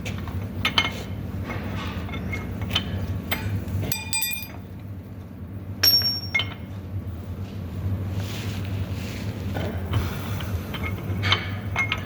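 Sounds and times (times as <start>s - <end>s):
low steady hum: 0.0s - 12.0s
metal tools clinking and knocking: 3.8s - 4.6s, 5.8s - 6.6s
ringing metallic clang: 3.9s - 4.6s, 5.8s - 6.5s.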